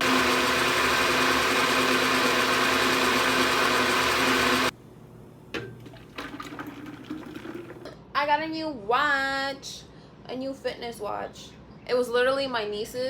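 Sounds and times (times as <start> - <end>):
blender motor running: 0.0 - 4.7.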